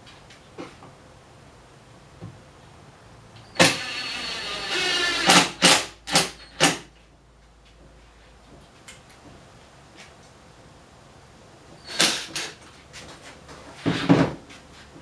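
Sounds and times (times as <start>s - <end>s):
cordless drill driving a screw: 3.5s - 6.8s, 11.9s - 12.6s.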